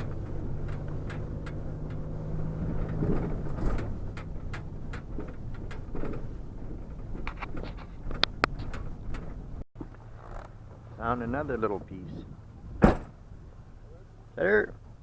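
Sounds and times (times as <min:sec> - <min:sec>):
light clicks and rattles: 0:00.0 - 0:10.6
van engine humming: 0:00.0 - 0:15.0.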